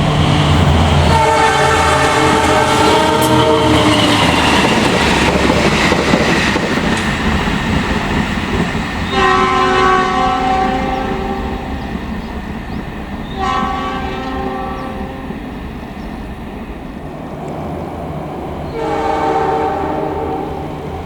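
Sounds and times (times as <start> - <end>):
train rumble and clatter: 0.0 - 21.0
train air horn: 1.1 - 4.3, 9.1 - 11.8, 13.3 - 15.5, 18.7 - 20.9.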